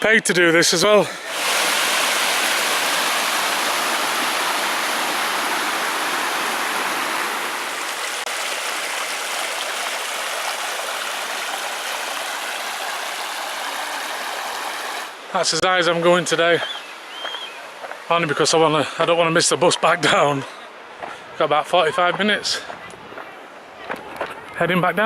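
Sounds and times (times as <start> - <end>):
flowing falling water: 0.6 - 19.5.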